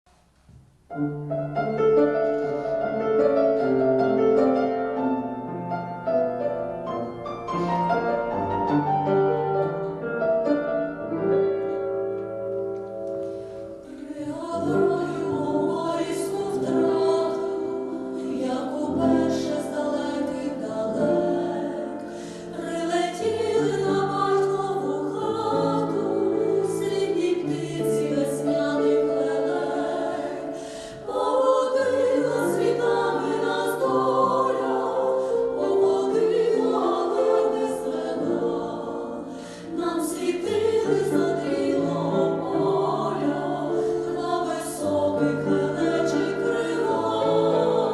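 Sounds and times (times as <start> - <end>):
musical accompaniment: 0.2 - 47.9
vocal ensemble singing in harmony: 13.2 - 47.9.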